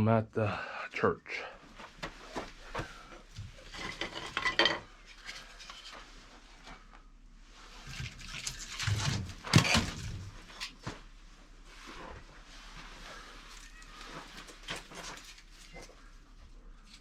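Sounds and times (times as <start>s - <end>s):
wood being handled: 1.8s - 6.9s
metal clattering and knocking: 3.6s - 4.9s.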